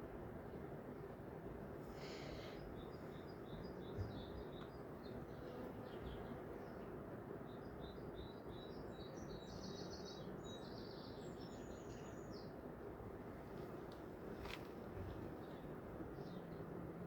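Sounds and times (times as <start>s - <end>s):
small birds chirping: 2.2s - 6.8s.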